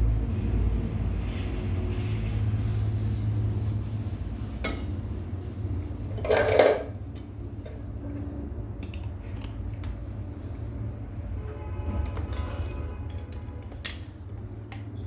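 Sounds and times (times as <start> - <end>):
metal tools clinking and clattering: 12.3 - 14.0.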